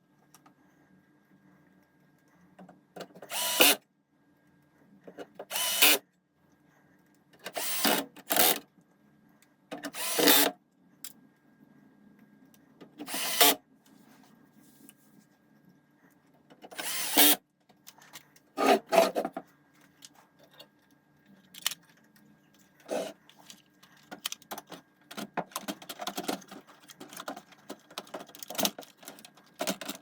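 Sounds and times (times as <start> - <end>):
faint low hum: 0.0 - 30.0
handheld power tool bursts: 3.3 - 3.8, 5.5 - 6.0, 13.1 - 13.6, 16.8 - 17.4.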